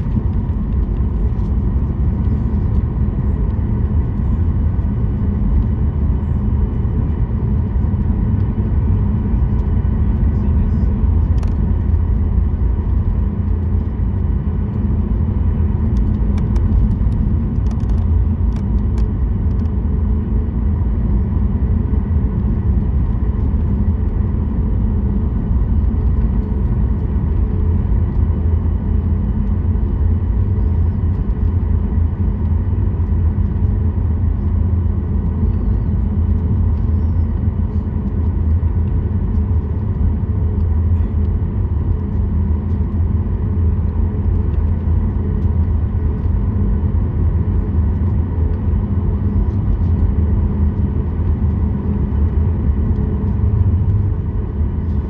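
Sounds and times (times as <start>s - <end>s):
airplane cabin engine rumble: 0.0s - 55.0s.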